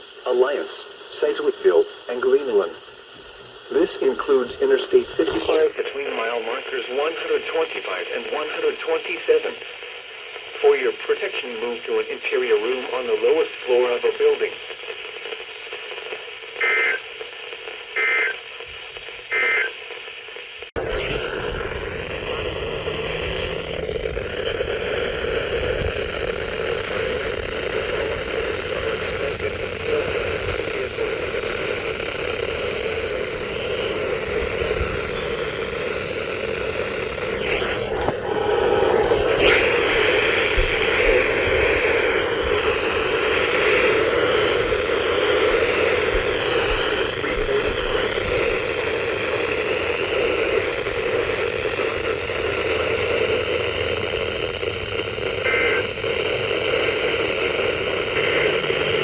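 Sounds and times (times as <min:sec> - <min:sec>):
buzzy two-tone data bursts: 0:00.0 - 0:09.1, 0:23.0 - 0:59.0
radio static hiss: 0:00.0 - 0:59.0.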